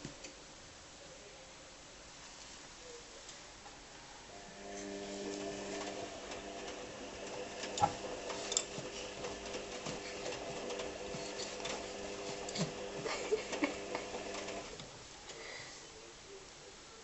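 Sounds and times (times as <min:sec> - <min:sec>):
washing machine running: 0:04.3 - 0:14.8.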